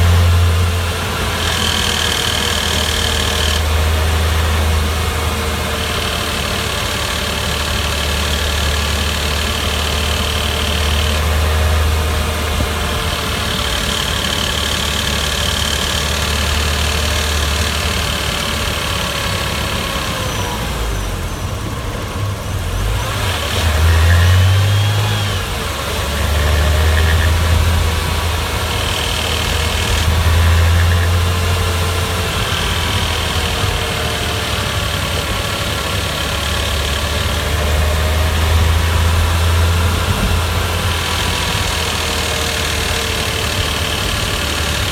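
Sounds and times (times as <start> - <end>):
car engine running: 0.0 - 44.9.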